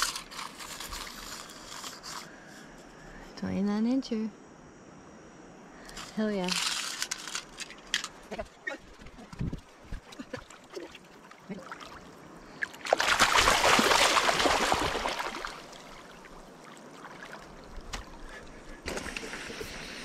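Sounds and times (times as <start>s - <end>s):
quiet hiss: 0.0s - 20.0s
water splashing: 8.7s - 19.9s.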